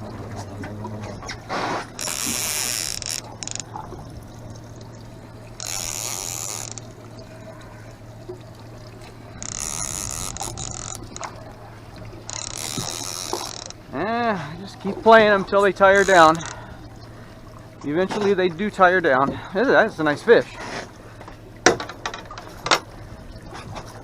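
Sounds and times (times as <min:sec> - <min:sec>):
steady low hum: 0:00.0 - 0:24.0
fishing reel buzzing and ratcheting: 0:02.0 - 0:03.7, 0:05.6 - 0:06.9, 0:09.4 - 0:11.3, 0:12.3 - 0:13.8, 0:15.9 - 0:16.6.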